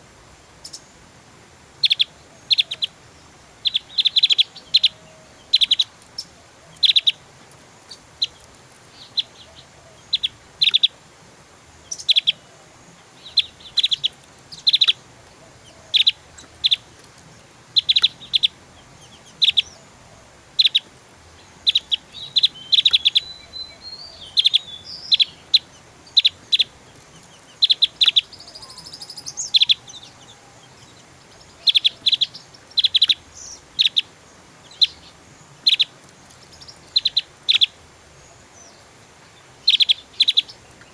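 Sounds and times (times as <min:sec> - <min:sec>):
bird twittering: 0:01.8 - 0:03.0, 0:03.6 - 0:07.2, 0:07.9 - 0:11.0, 0:11.9 - 0:12.6, 0:13.2 - 0:16.9, 0:17.8 - 0:19.9, 0:20.6 - 0:34.1, 0:34.7 - 0:37.8, 0:39.6 - 0:40.9.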